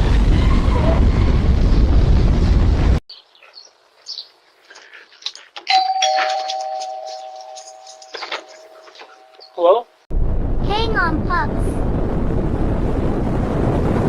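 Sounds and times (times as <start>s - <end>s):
ding-dong doorbell chime: 5.7s - 9.6s
loud low rumbling: 10.1s - 14.0s.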